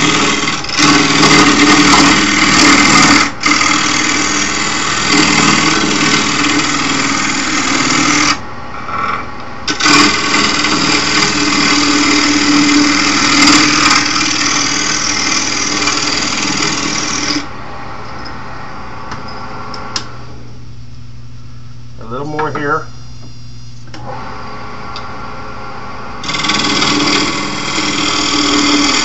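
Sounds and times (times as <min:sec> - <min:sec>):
turning tool scraping wood: 0:00.0 - 0:17.4, 0:26.2 - 0:29.0
lathe motor humming: 0:00.0 - 0:17.5, 0:26.2 - 0:29.0.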